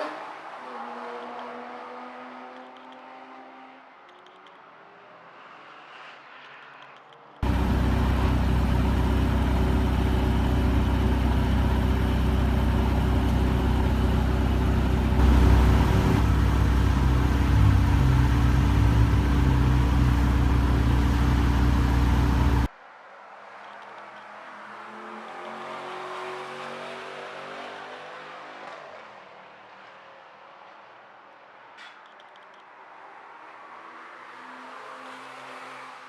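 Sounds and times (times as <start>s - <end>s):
deep rumble: 7.4s - 22.7s
sports car engine running hard: 7.4s - 22.7s.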